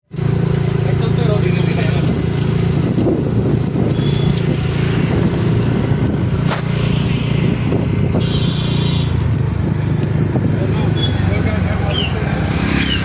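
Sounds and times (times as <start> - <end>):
wind noise: 2.0 - 11.4.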